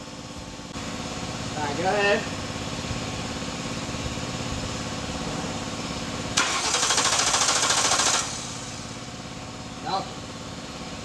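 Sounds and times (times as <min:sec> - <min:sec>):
car engine cranking without starting: 0:06.4 - 0:09.3.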